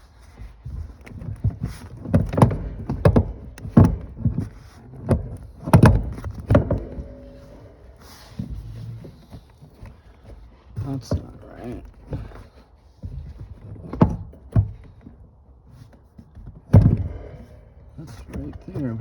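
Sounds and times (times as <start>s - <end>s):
car seat thumping and knocking: 0.7s - 9.4s, 13.0s - 15.2s, 16.3s - 19.0s.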